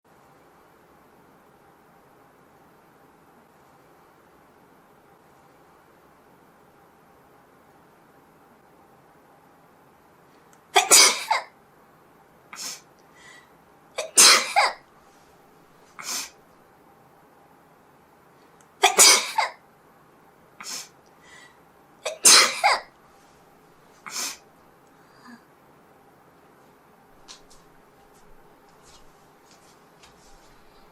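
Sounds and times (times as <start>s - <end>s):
person sneezing: 10.8s - 11.5s, 12.6s - 12.9s, 14.0s - 14.8s, 16.0s - 16.4s, 18.8s - 19.6s, 20.6s - 21.0s, 22.1s - 22.9s, 24.0s - 24.4s.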